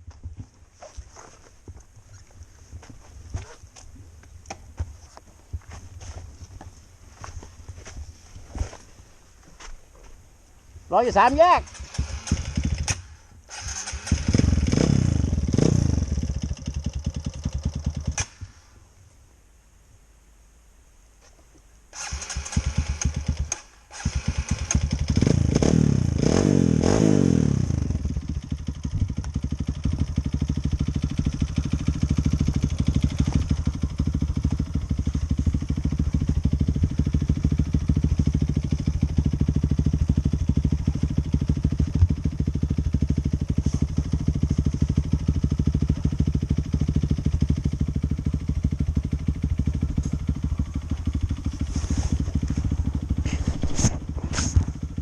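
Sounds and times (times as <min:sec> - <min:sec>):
dirt bike engine revving: 0:11.1 - 0:18.4, 0:22.0 - 0:55.0.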